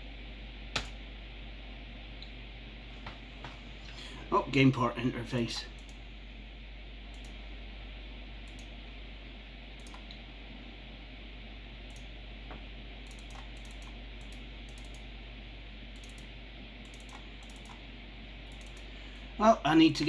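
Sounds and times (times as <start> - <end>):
computer whirring and humming: 0.0 - 20.0
keyboard and mouse clicks: 0.7 - 1.0, 9.8 - 10.2, 13.0 - 15.0, 16.0 - 17.8, 18.4 - 18.9.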